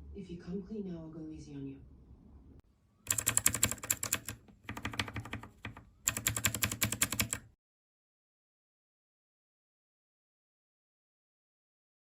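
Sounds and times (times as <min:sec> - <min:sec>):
typing on mechanical keyboard: 0:03.1 - 0:07.5.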